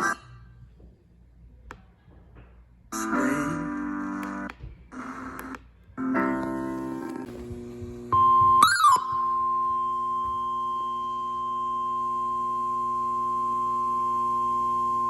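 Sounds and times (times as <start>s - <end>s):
steady high alarm tone: 8.1s - 15.0s.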